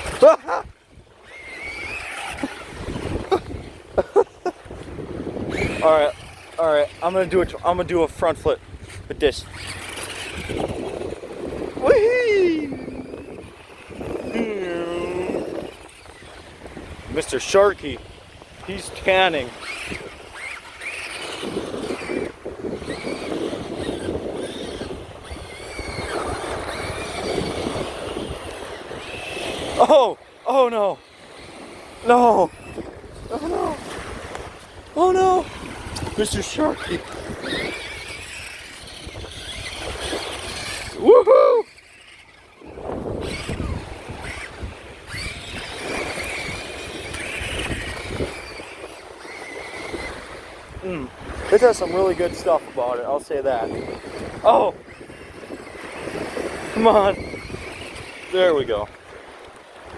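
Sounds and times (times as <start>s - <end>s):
toy truck splashing through water: 0.0s - 59.9s
electric motor whine: 12.6s - 29.8s, 31.0s - 52.6s.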